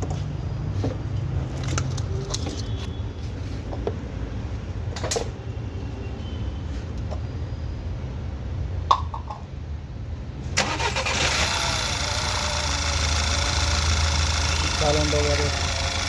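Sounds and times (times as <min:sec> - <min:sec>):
car engine cranking and running: 0:10.6 - 0:16.0
engine starter clicks: 0:10.6 - 0:16.0.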